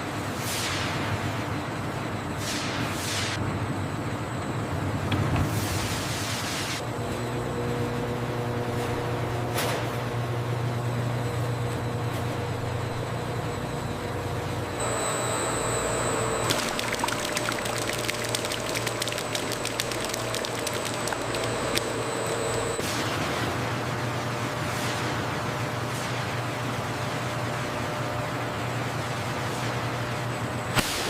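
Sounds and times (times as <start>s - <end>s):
machinery humming: 6.9s - 23.2s
rushing water: 16.4s - 22.0s
fast rattle of clicks: 16.5s - 22.7s.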